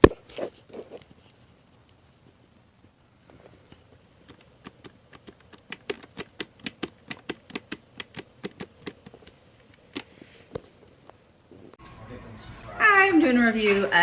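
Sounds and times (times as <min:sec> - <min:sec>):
rapid light clicks: 0:03.3 - 0:11.2.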